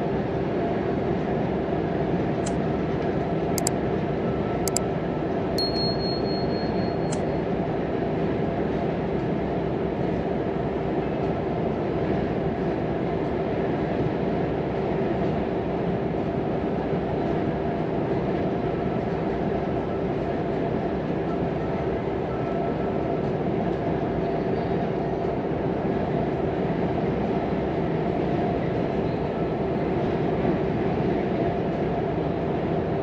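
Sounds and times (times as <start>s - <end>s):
thin high beep: 5.6s - 7.2s.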